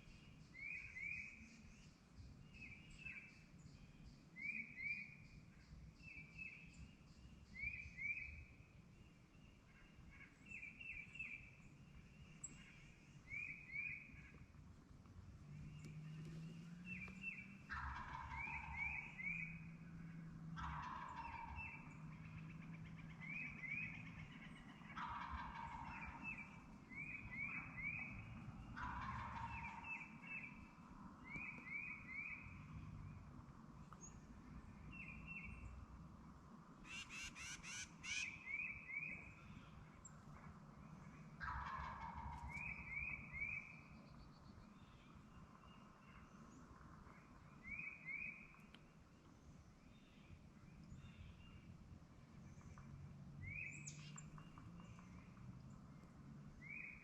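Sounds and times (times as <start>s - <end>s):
turkey gobbling: 17.7s - 19.6s, 20.6s - 30.5s, 36.9s - 38.3s, 41.4s - 43.6s
small bird chirping: 36.9s - 39.1s.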